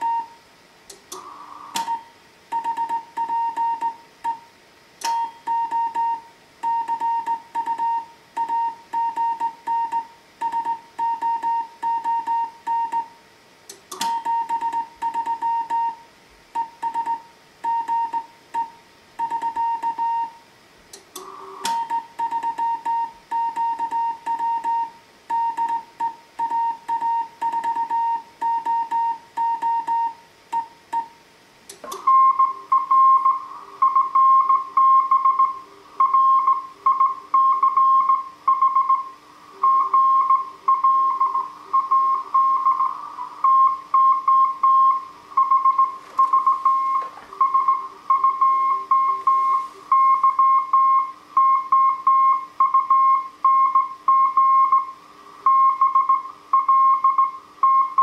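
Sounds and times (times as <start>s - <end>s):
morse code beeps: 0.0s - 0.4s, 1.2s - 13.2s, 13.9s - 16.0s, 16.6s - 20.4s, 21.2s - 31.2s, 31.8s - 58.0s
sharp clicks: 0.9s - 2.0s, 13.7s - 14.3s.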